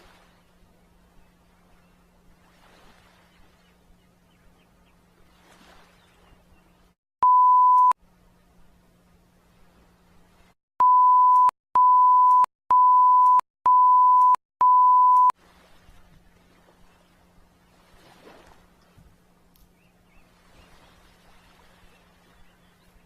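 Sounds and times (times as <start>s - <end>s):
electronic beep tone: 7.2s - 8.0s, 10.8s - 15.3s.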